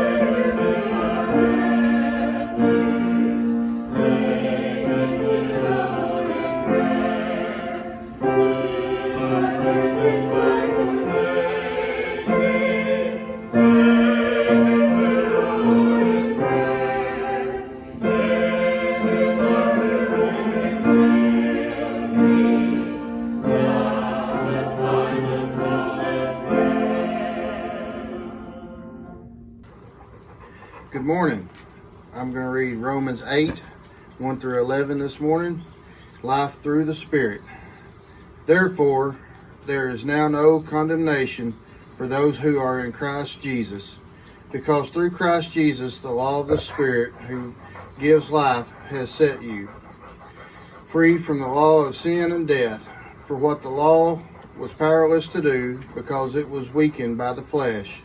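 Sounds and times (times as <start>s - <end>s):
choir singing a slow hymn: 0.0s - 29.4s, 44.7s - 58.0s.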